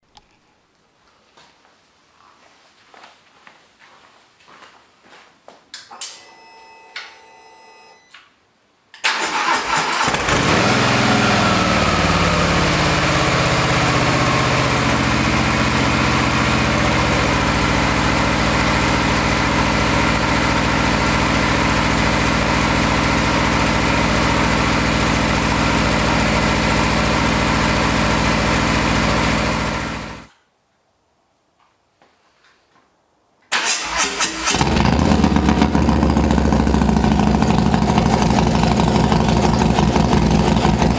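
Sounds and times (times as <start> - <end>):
motorcycle engine cranking: 9.0 - 11.4, 33.5 - 40.9
motorcycle engine idling: 10.5 - 30.3, 34.5 - 40.9.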